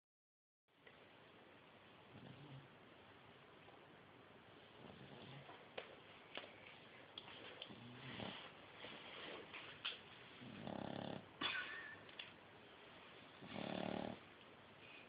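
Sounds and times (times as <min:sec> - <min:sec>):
puppy snoring: 0:02.1 - 0:02.8, 0:04.8 - 0:05.6, 0:07.7 - 0:08.5, 0:10.4 - 0:11.3, 0:13.4 - 0:14.3.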